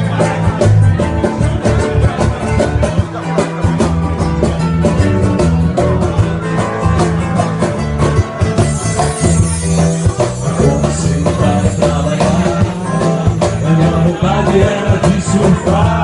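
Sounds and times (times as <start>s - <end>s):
bass line: 0.0s - 16.0s
drum beat: 0.0s - 16.0s
guitar: 0.0s - 16.0s
rock band instrumental: 0.0s - 16.0s.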